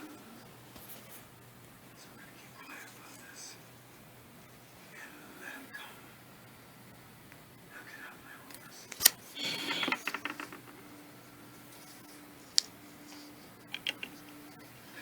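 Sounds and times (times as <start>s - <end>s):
small hard objects clicking: 8.9s - 10.8s.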